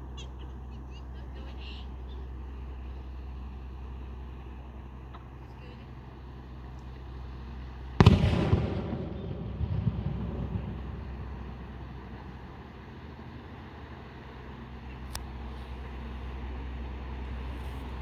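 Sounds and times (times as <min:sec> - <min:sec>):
steady low hum: 0:00.0 - 0:18.0
firework boom and rumble: 0:08.0 - 0:13.1.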